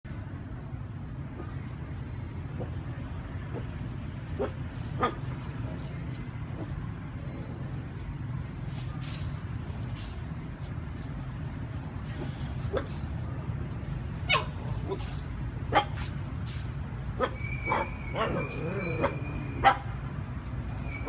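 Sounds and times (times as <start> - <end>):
dog yipping: 4.4 - 5.3, 14.2 - 16.1, 17.1 - 20.0.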